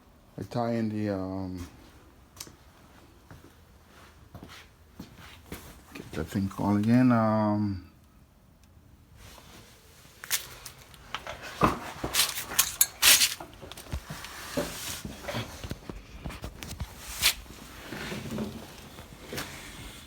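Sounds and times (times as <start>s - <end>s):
metal tools clinking and scraping: 10.2s - 15.5s.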